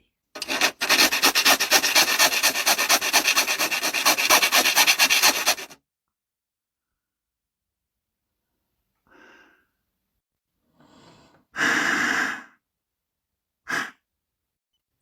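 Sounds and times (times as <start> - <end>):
metal being filed: 0.4 - 5.8.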